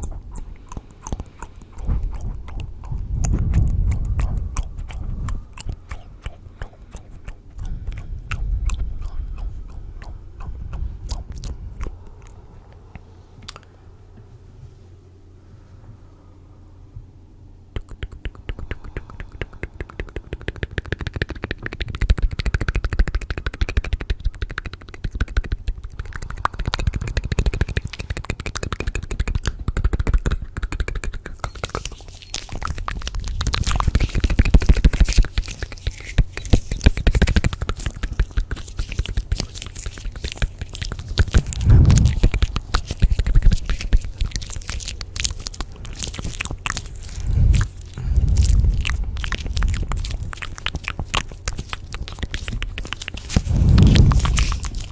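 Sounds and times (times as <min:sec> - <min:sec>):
rapid crackling and clicking: 0:17.8 - 0:54.9
low thumps: 0:41.2 - 0:43.6, 0:47.0 - 0:52.1, 0:53.3 - 0:54.9.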